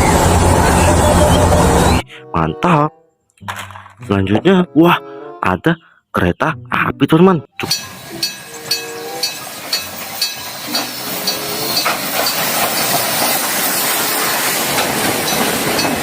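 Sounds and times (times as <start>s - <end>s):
steam train chuffing: 0.0s - 2.0s, 7.6s - 16.0s
steam hiss: 7.7s - 16.0s.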